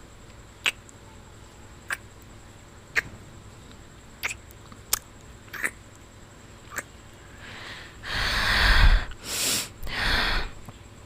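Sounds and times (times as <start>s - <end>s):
mouth clicks: 0.6s - 1.0s, 1.8s - 2.1s, 2.9s - 3.1s, 4.2s - 6.0s, 6.7s - 6.9s
woman breathing heavily: 7.3s - 10.6s.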